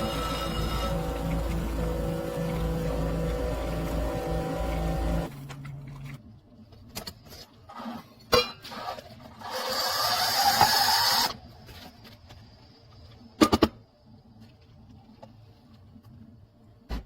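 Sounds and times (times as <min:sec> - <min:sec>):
espresso machine hissing: 0:00.0 - 0:05.3.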